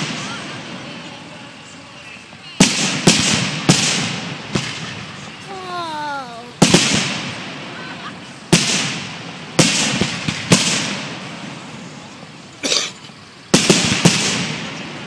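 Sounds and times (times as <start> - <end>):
fireworks bangs: 2.6 - 7.8, 8.5 - 11.6, 13.5 - 15.0
smaller fireworks cracks: 2.6 - 7.8, 8.5 - 11.6, 13.5 - 15.0.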